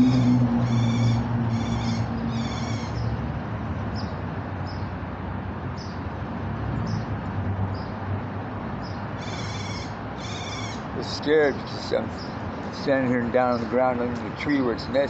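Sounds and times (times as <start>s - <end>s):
steady low hum: 0.0s - 3.6s
bird harsh alarm calls: 0.1s - 3.1s, 9.2s - 10.9s.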